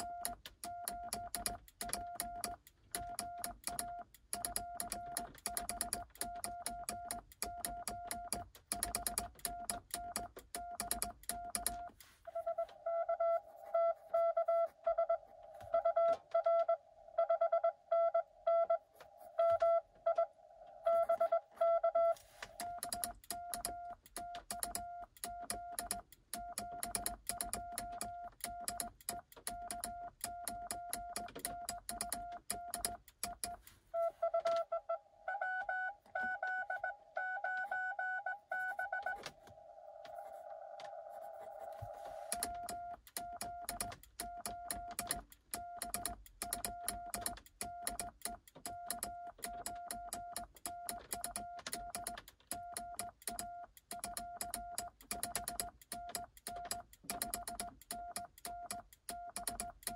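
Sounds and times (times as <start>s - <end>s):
key contacts clicking: 0.0s - 12.0s, 22.5s - 33.6s, 42.3s - 59.9s
morse code beeps: 0.0s - 18.8s, 19.4s - 39.2s, 41.8s - 59.8s.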